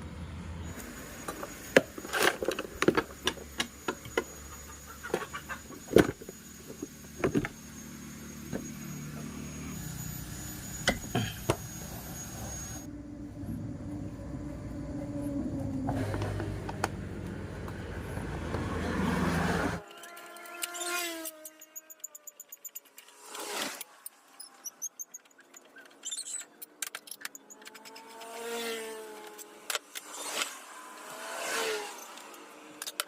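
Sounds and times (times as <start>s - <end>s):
steady low hum: 0.0s - 19.8s.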